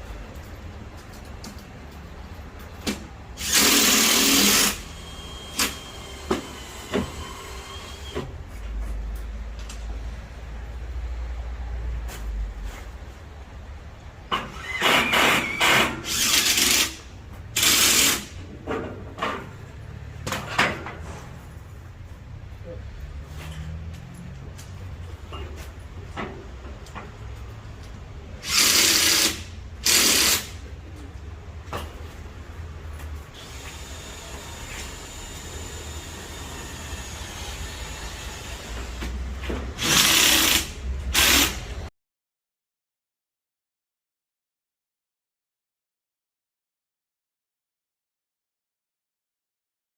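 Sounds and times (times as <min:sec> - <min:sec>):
power drill drilling: 0:03.4 - 0:08.2, 0:14.6 - 0:17.0, 0:17.6 - 0:18.3, 0:28.4 - 0:30.5, 0:39.8 - 0:41.6.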